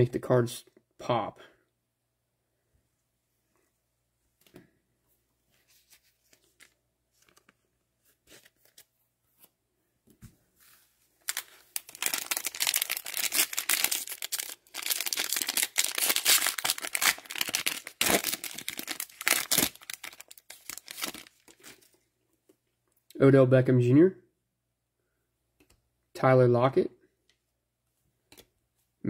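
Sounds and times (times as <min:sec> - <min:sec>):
card pack wrapper tearing and crinkling: 0:11.2 - 0:21.9.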